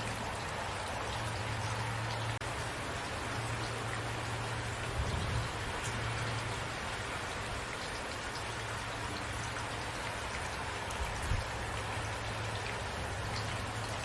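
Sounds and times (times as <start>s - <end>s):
steady rainfall with ticking drops: 0.0s - 14.0s.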